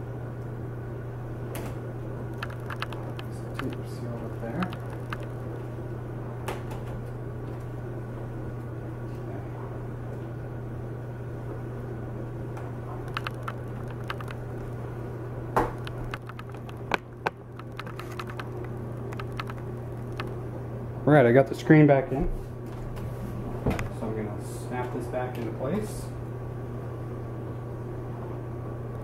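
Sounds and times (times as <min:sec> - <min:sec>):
steady low hum: 0:00.0 - 0:29.0
plastic laptop parts clicking: 0:02.4 - 0:03.8, 0:04.5 - 0:05.3, 0:13.1 - 0:14.4, 0:15.8 - 0:20.3.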